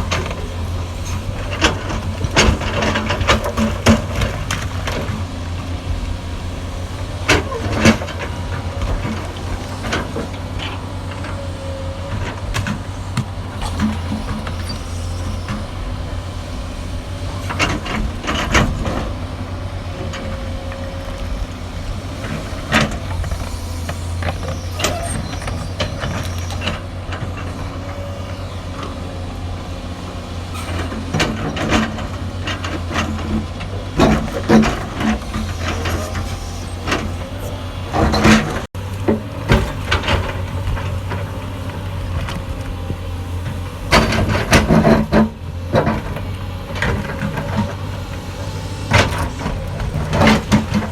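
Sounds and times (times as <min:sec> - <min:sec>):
excavator diesel engine running: 0:00.0 - 0:50.9
knocks and clanks: 0:30.6 - 0:41.4, 0:43.4 - 0:48.0, 0:48.6 - 0:50.9.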